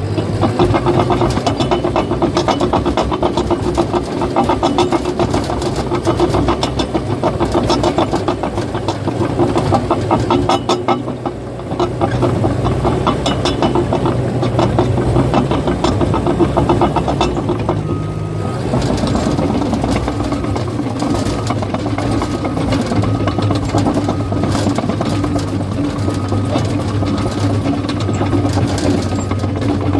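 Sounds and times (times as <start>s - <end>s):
diesel engine under load: 0.0s - 29.9s
steel tracks clattering: 0.0s - 29.9s.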